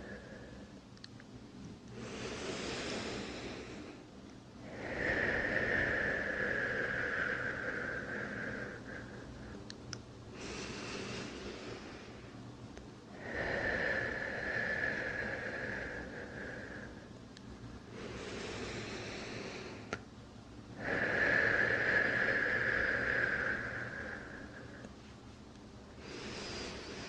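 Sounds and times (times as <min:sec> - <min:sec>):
person breathing deeply: 0:00.0 - 0:00.9, 0:01.8 - 0:25.1, 0:25.9 - 0:27.0
small click: 0:01.0 - 0:01.3.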